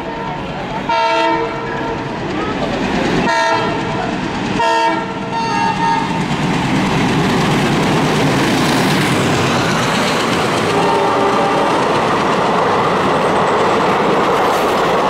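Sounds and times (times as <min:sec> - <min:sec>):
locomotive horn blasts: 0:00.0 - 0:02.0, 0:03.2 - 0:03.9, 0:04.6 - 0:06.2, 0:10.6 - 0:12.0
train wheels clattering: 0:00.5 - 0:15.0.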